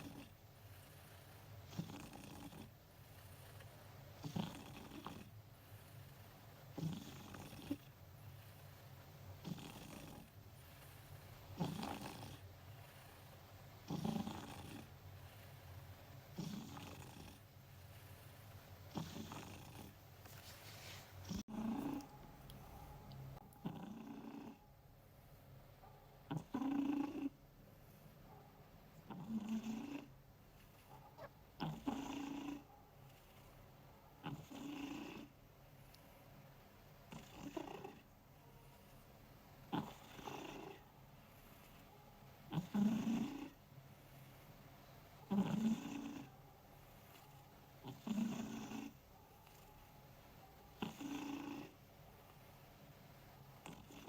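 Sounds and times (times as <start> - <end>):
cat snoring: 0.0 - 20.0, 21.2 - 22.1, 23.6 - 24.6, 26.3 - 27.4, 29.1 - 30.2, 31.6 - 33.6, 34.2 - 35.4, 37.1 - 38.1, 39.7 - 41.8, 42.5 - 43.6, 45.2 - 49.7, 50.8 - 51.8, 53.6 - 54.0.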